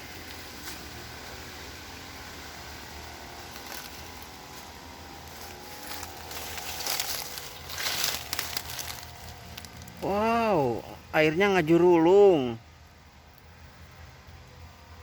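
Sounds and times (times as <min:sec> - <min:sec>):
faint steady hum: 0:00.0 - 0:15.0
rustling handling noise: 0:03.4 - 0:10.2.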